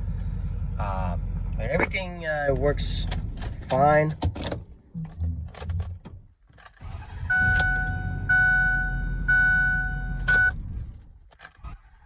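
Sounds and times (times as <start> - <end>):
electronic warning chime: 7.3 - 10.6.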